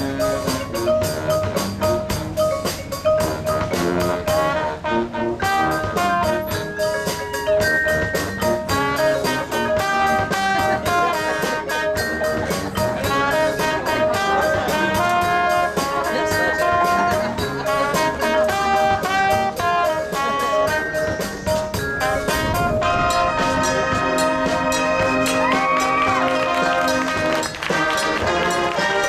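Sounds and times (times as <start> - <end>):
brass section playing chords: 0.0 - 7.2, 7.9 - 29.0
drumline beat: 0.0 - 29.0.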